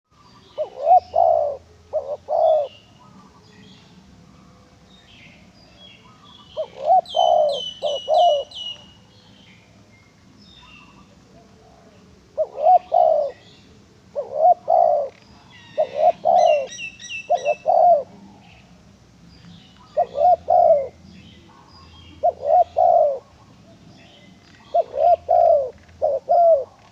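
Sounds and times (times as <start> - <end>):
dove cooing: 0.3 - 3.6, 6.0 - 8.9, 10.7 - 18.5, 19.8 - 26.9
small bird chirping: 5.0 - 11.2, 12.4 - 26.9.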